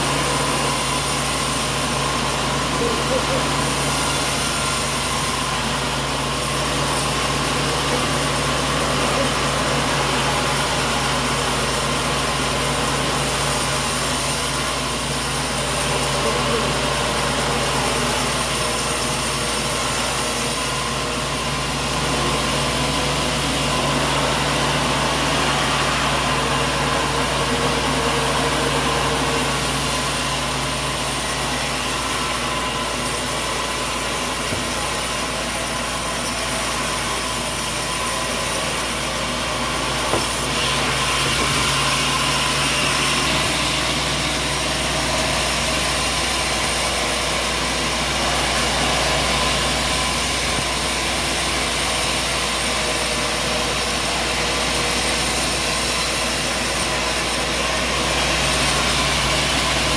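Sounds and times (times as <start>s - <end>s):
sawmill machinery running: 0.0s - 59.9s.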